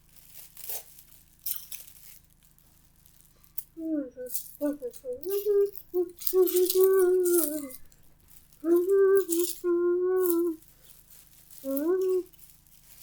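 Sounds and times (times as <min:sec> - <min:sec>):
rattling hiss like a shaker: 0:00.0 - 0:13.0
child humming: 0:03.8 - 0:08.0, 0:08.6 - 0:10.6, 0:11.6 - 0:12.3.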